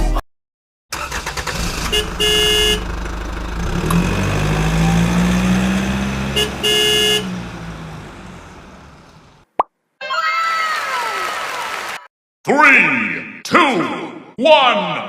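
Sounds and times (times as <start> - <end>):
car horn honking: 1.2 - 3.0, 4.3 - 8.9
vehicle engine running: 1.6 - 9.4.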